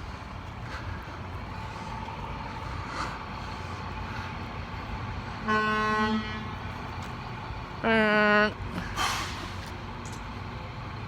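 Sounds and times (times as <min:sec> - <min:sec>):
idling vehicles rumbling: 0:00.0 - 0:11.0
fire truck horn blast: 0:05.4 - 0:06.7.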